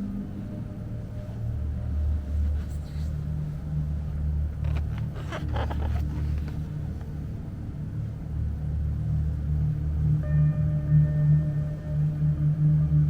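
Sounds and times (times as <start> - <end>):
droning ambient music: 0.0 - 13.0
packaging rustling: 4.6 - 6.9.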